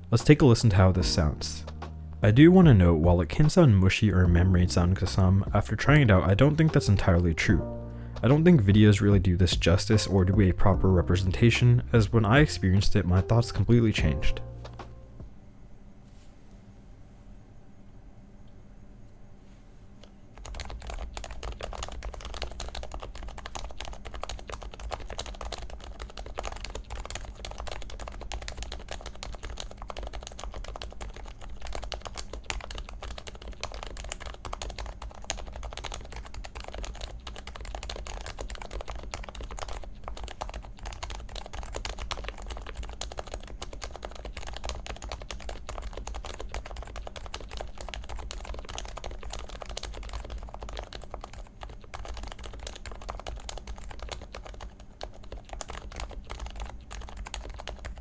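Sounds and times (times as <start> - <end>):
fast keyboard typing thocks: 20.4 - 58.0.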